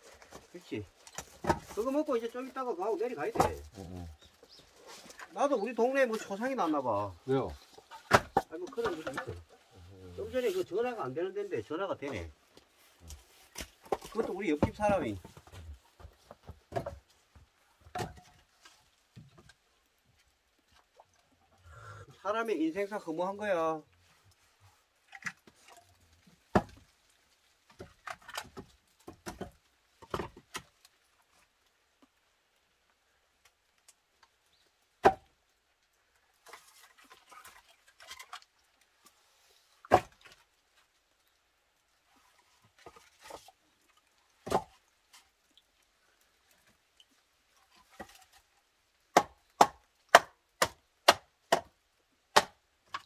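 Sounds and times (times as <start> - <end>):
axe chopping firewood: 1.0 - 1.9, 3.3 - 3.7, 7.9 - 9.3, 17.9 - 18.3, 26.5 - 26.8, 27.8 - 30.6, 35.0 - 35.3, 39.9 - 40.4, 44.4 - 44.8, 49.1 - 53.0.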